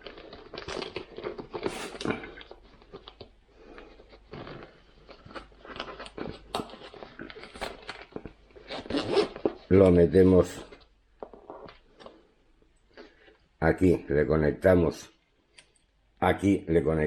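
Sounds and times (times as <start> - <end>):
rustling and crinkling of bag: 0.0 - 12.3.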